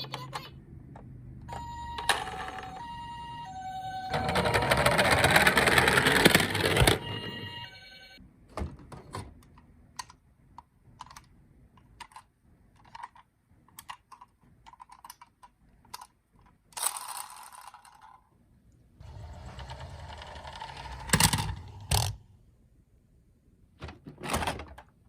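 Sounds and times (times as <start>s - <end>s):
toy electronic siren: 1.5s - 6.0s, 6.6s - 8.2s
toy cars clicking and clattering: 4.1s - 7.1s, 11.0s - 18.3s, 19.0s - 22.2s.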